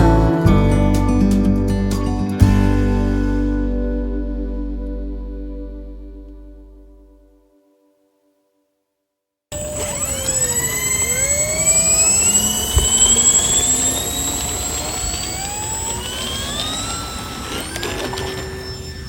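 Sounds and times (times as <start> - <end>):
electric motors and propellers whining: 9.5 - 19.0.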